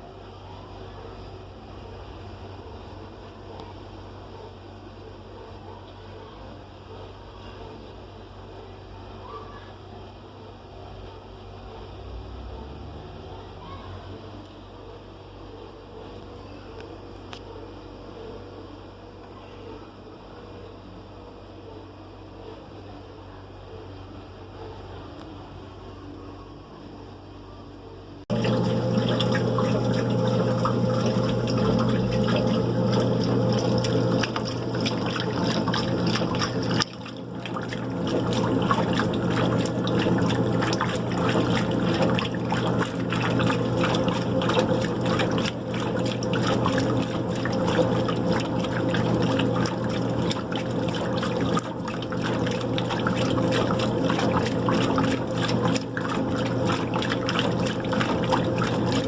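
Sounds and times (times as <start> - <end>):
steady low hum: 9.8 - 59.0
water rushing in washing machine: 28.3 - 59.0.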